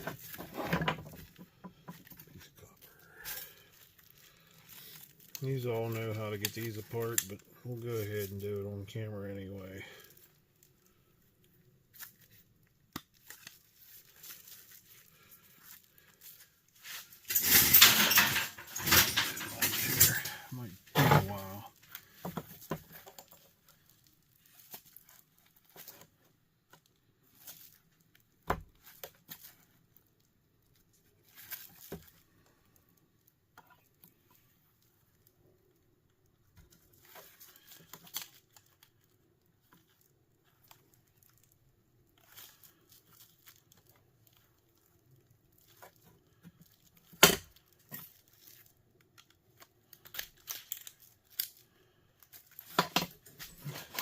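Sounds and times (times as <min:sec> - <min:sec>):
small parts clicking and rattling: 0:11.9 - 0:26.1, 0:36.6 - 0:54.0.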